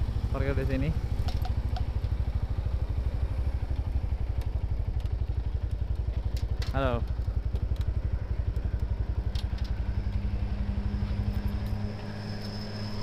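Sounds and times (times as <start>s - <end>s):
motorcycle engine idling: 0.0s - 13.0s
steady low hum: 0.0s - 13.0s.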